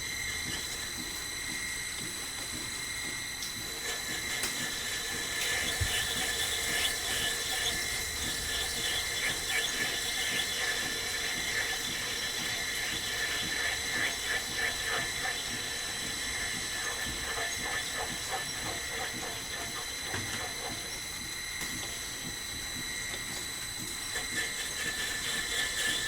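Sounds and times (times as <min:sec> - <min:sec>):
lathe whining: 0:00.0 - 0:26.0
tool scraping and chattering squeal: 0:03.7 - 0:21.0, 0:24.1 - 0:26.0.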